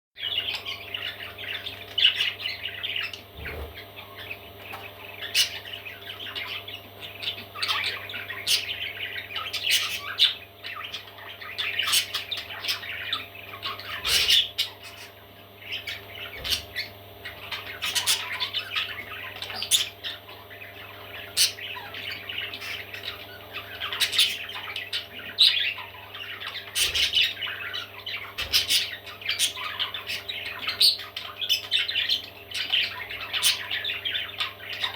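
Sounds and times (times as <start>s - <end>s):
parrot chicks squawking: 0.2s - 34.9s
steady low hum: 0.2s - 34.9s.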